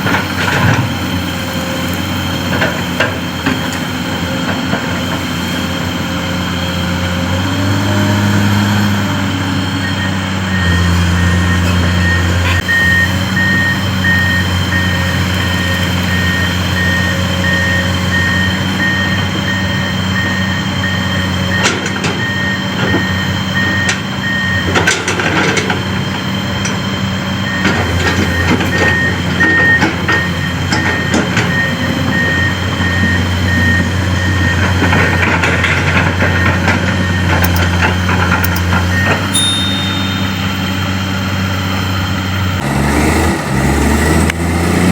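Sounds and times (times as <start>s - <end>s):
reversing alarm beeps: 9.8s - 24.8s, 27.4s - 35.4s, 38.5s - 40.9s.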